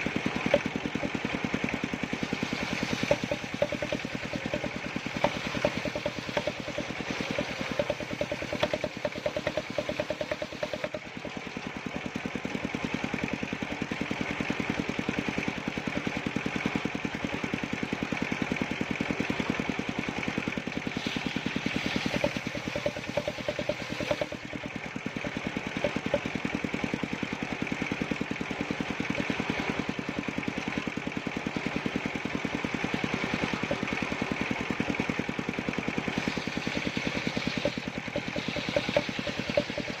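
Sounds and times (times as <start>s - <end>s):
circular saw engine running: 0.0s - 40.0s.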